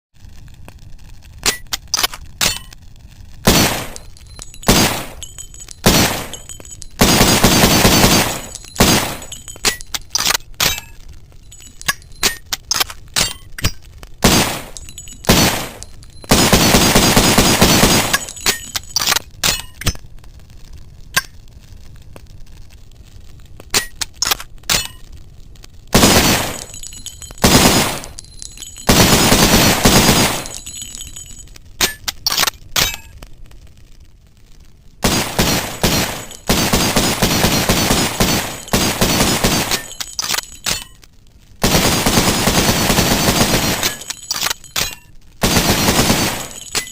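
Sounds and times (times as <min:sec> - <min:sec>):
gunfire bursts: 0:03.5 - 0:10.4, 0:14.2 - 0:19.0, 0:26.0 - 0:31.0, 0:35.0 - 0:40.6, 0:41.6 - 0:44.7, 0:45.4 - 0:46.9
pistol shots: 0:03.5 - 0:10.8, 0:14.2 - 0:19.6, 0:26.0 - 0:31.0, 0:35.0 - 0:40.8, 0:41.6 - 0:46.9.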